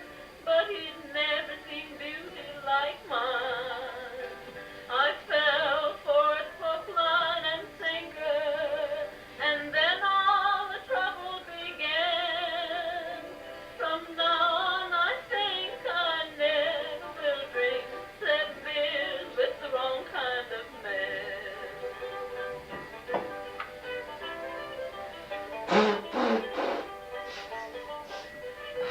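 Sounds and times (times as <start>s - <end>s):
person singing with vibrato: 25.6s - 28.9s.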